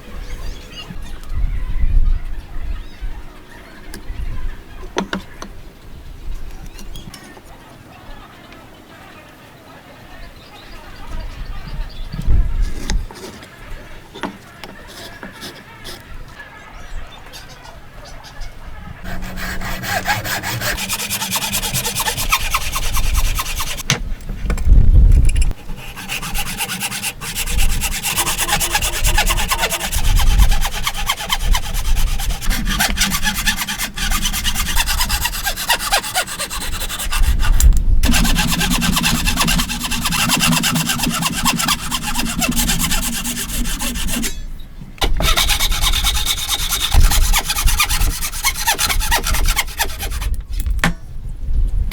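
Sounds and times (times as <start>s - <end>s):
hand saw cutting wood: 14.7s - 16.0s, 19.0s - 23.8s, 25.5s - 44.4s, 45.0s - 50.4s.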